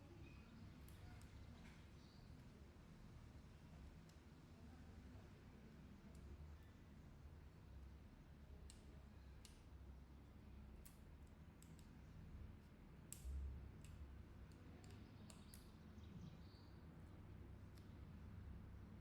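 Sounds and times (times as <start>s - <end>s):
small parts clicking and tapping: 10.8s - 15.8s.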